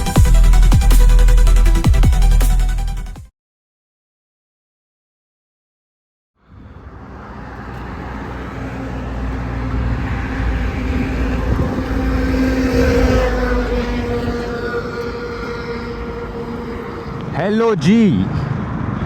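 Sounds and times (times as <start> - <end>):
road and wind noise: 6.4 - 19.0
motorcycle engine hum: 7.6 - 17.5.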